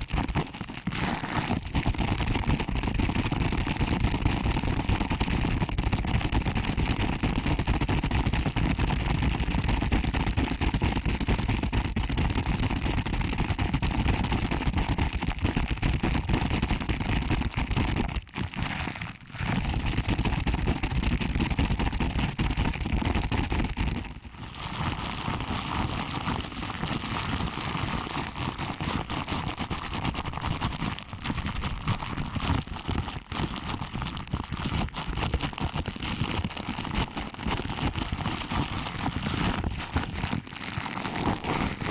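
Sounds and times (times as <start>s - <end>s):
fingers rubbing microphone crackling: 0.0s - 3.4s, 17.7s - 20.8s, 23.1s - 41.9s.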